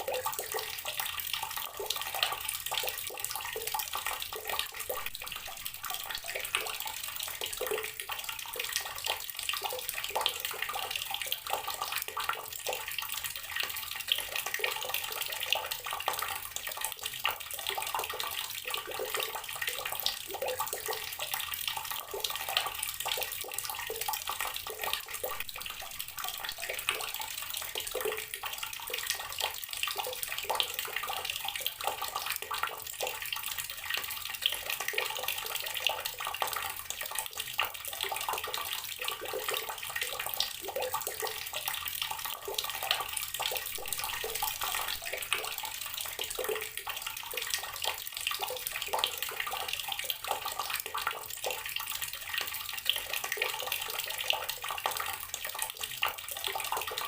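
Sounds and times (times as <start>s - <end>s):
tap water pouring into container: 0.0s - 57.0s.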